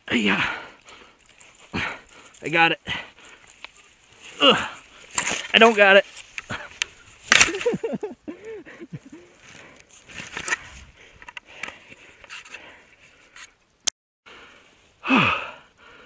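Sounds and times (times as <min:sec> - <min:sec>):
twigs snapping: 0:03.2 - 0:07.9
sapling creaking and crackling: 0:03.2 - 0:08.0, 0:09.0 - 0:11.2
sharp wood crack: 0:05.0 - 0:08.0.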